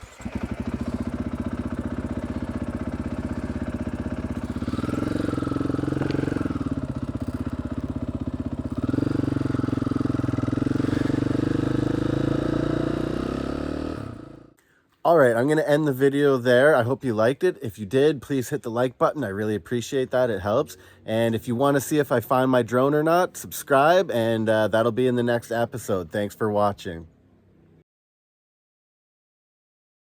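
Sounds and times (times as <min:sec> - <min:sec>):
dirt bike engine running: 0:00.0 - 0:14.6.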